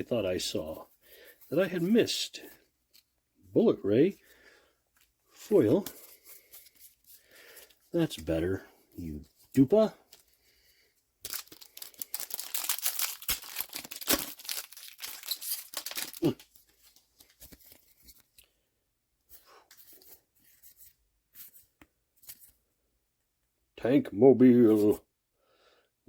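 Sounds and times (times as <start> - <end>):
cards rustling: 5.0 - 18.5
wrapper crinkling and tearing: 11.2 - 17.8.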